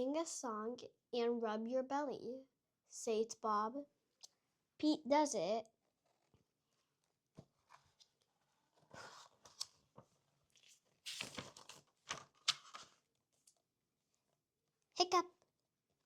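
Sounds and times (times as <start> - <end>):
book pages rustling and turning: 6.0 - 13.6.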